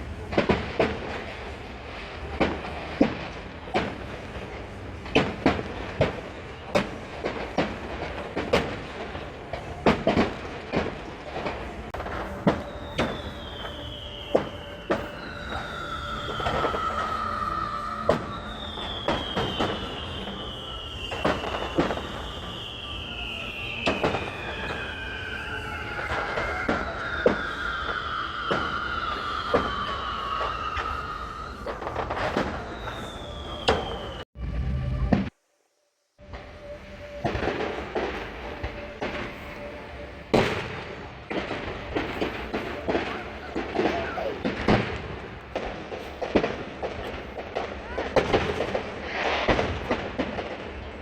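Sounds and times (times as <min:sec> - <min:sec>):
fireworks bangs and pops: 0:00.0 - 0:34.3, 0:36.2 - 0:51.0
whistling fireworks: 0:00.0 - 0:51.0
low rumble: 0:34.4 - 0:35.3.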